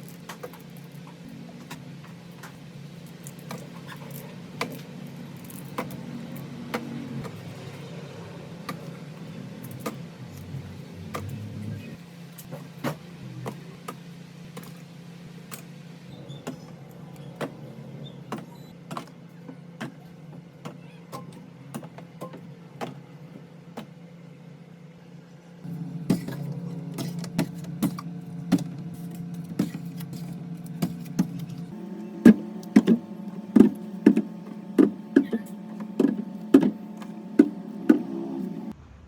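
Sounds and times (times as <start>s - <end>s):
steady low hum: 0.0s - 18.8s, 24.3s - 39.0s
groceries knocking on fridge shelves: 25.8s - 38.6s.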